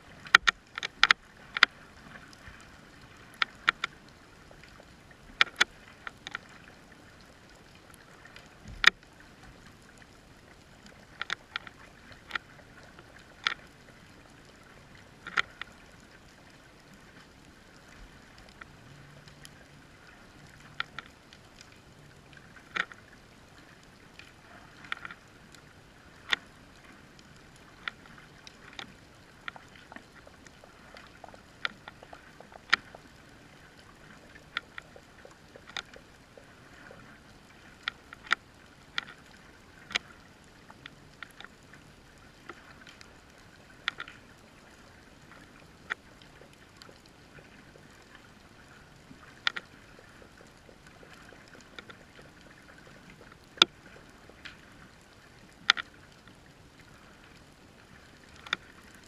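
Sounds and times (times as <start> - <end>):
faint steady hiss: 0.0 - 59.0
sharp clicks and ticks: 0.2 - 1.7.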